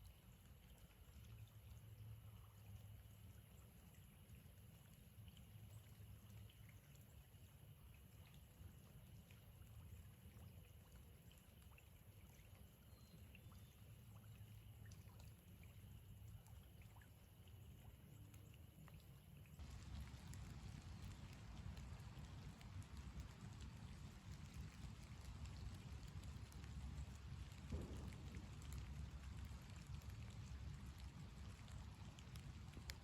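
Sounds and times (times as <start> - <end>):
water dripping: 0.0 - 33.0
low rumble: 19.6 - 33.0.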